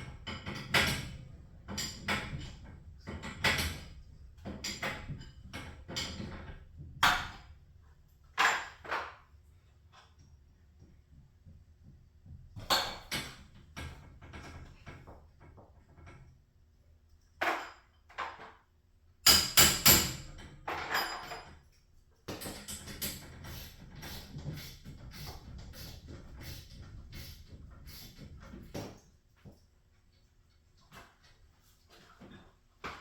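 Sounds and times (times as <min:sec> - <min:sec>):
metal tools clanking: 0:19.4 - 0:21.8.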